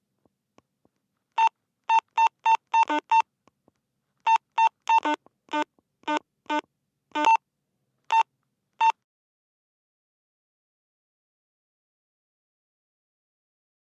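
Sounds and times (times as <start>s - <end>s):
walkie-talkie beeps: 4.3s - 6.6s, 7.2s - 7.4s.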